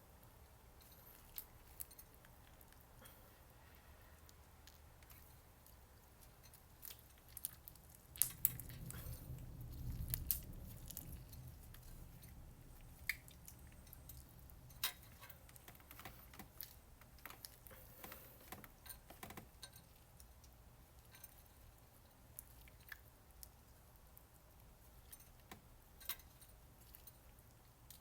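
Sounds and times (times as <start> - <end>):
low rumble of handling: 6.6 - 19.5.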